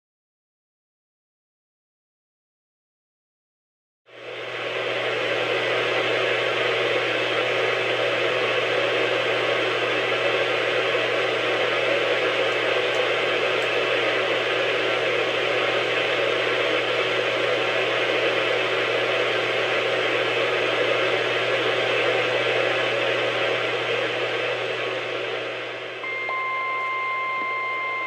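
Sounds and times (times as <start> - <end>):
low hum: 22.0 - 28.0.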